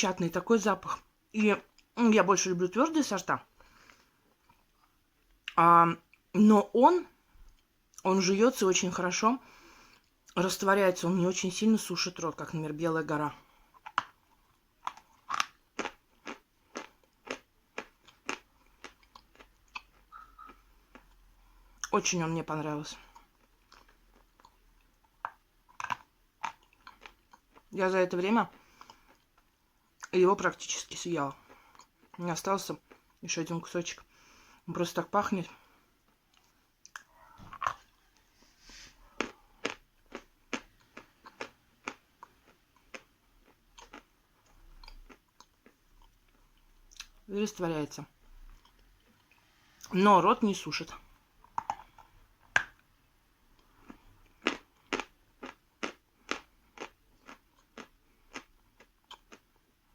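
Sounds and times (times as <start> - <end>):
person chewing crunchy chalk: 13.7 - 21.9, 23.1 - 27.7, 36.3 - 47.1, 51.4 - 52.6, 53.5 - 59.6.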